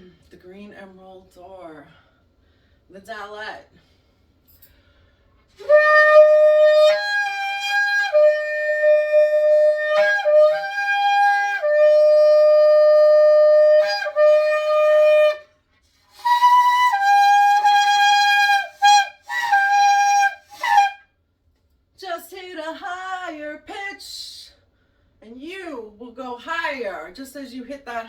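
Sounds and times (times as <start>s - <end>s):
shofar blasts: 5.5s - 21.0s.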